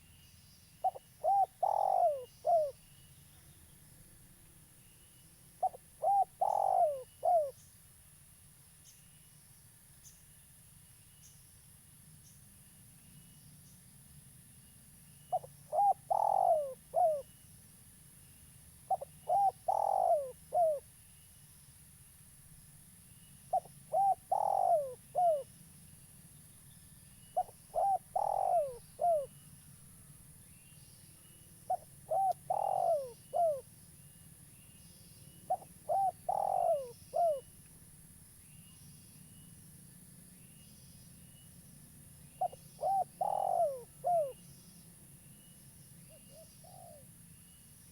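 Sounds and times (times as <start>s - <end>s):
dove cooing: 0.8s - 2.8s, 5.6s - 7.6s, 15.3s - 17.3s, 18.9s - 20.8s, 23.5s - 25.5s, 27.4s - 29.4s, 31.7s - 33.7s, 35.5s - 37.5s, 42.4s - 44.4s, 46.1s - 47.1s.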